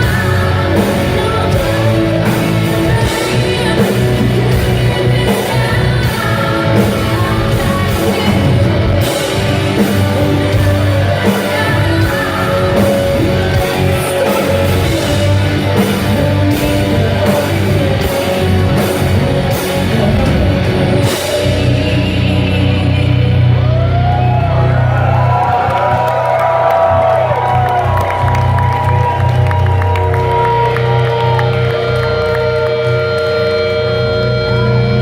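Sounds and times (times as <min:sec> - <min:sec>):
female lead vocal: 0:00.0 - 0:24.1
symphonic metal band: 0:00.0 - 0:35.0.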